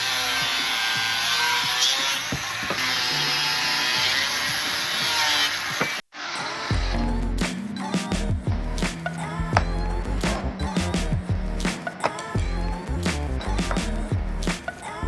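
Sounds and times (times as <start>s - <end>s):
power tool grinding metal: 0.0s - 7.2s.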